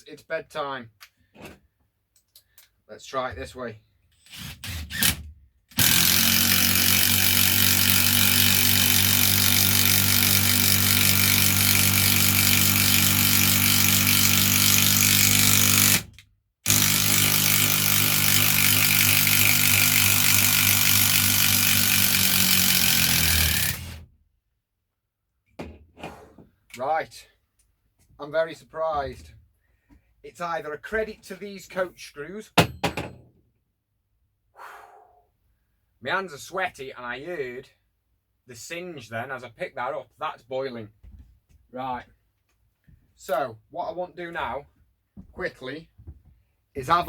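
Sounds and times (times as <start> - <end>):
impact driver driving screw into wood: 4.3 - 24.0.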